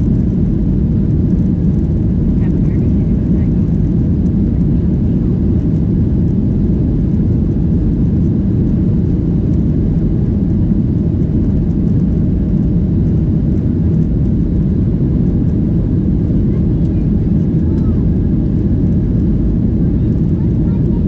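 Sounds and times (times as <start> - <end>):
airplane cabin engine drone: 0.0 - 21.0.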